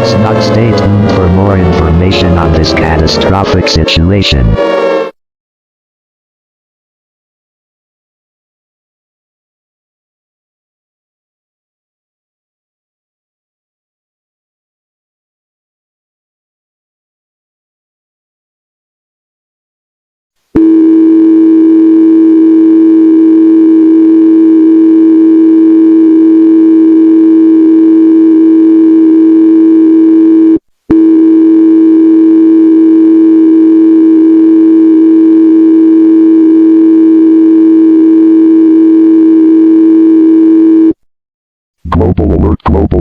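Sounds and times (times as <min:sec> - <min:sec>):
low emergency alert tone: 0:00.0 - 0:05.1, 0:20.6 - 0:41.0.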